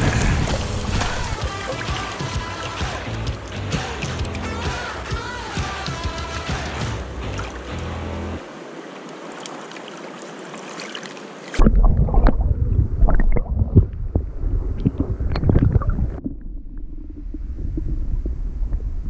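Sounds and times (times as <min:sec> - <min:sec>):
rushing river water: 0:00.0 - 0:13.4.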